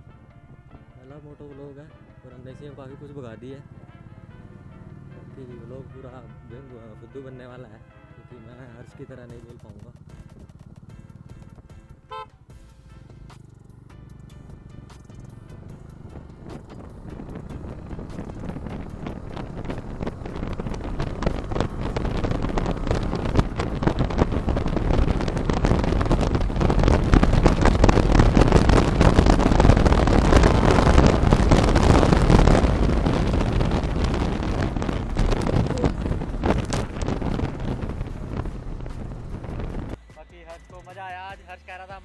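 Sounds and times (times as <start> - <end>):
low steady rumble: 9.4 - 40.0
wind buffeting microphone: 15.2 - 40.0.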